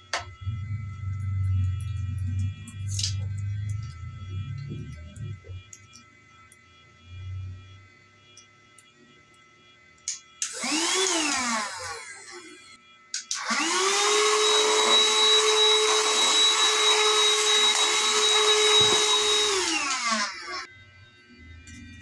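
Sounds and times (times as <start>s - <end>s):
handheld vacuum motor whining: 10.4s - 20.7s.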